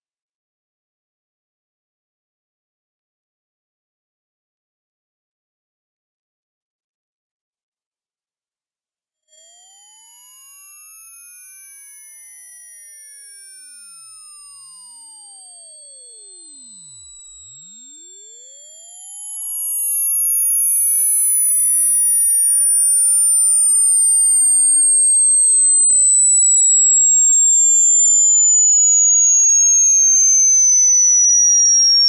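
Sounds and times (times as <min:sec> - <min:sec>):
sine tone gliding downward: 0:09.3 - 0:32.0.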